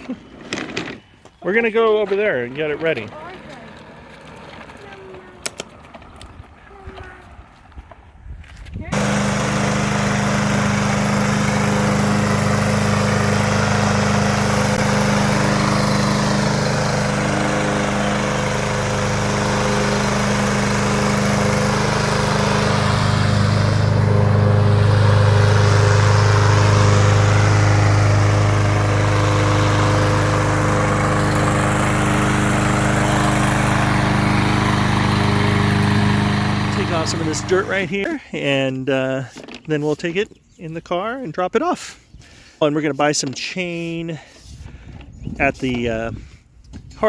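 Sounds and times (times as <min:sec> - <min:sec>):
lawn mower engine running: 0:00.0 - 0:07.5, 0:08.8 - 0:38.3.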